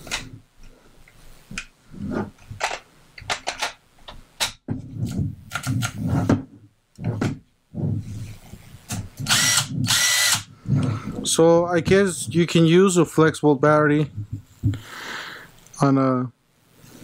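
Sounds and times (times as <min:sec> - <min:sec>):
power tool motor running: 0:09.3 - 0:10.5.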